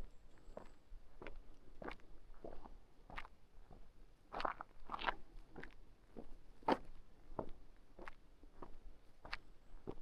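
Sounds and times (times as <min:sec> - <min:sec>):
footsteps of person walking: 0:00.0 - 0:10.0.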